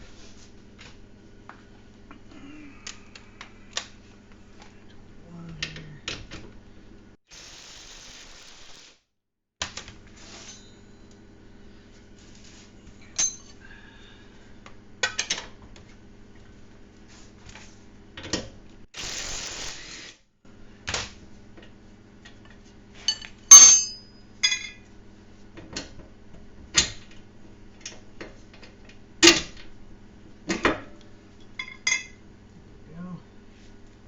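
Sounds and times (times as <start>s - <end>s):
wrench clinking on metal: 13.2s - 13.6s, 23.5s - 24.8s.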